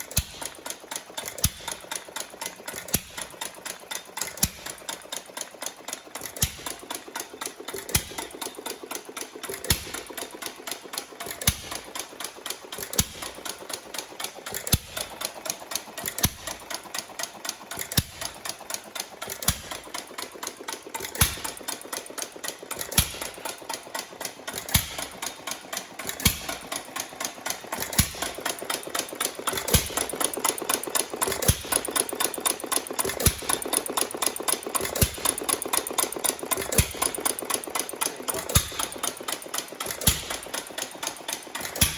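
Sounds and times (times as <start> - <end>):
rapid mechanical clicking: 0.0 - 41.9
hit-and-miss engine firing: 21.0 - 21.6, 22.8 - 23.4, 24.6 - 25.5, 26.1 - 26.9, 27.7 - 29.0, 29.6 - 30.2, 36.7 - 37.2, 38.4 - 39.2, 39.9 - 40.8, 41.6 - 41.9.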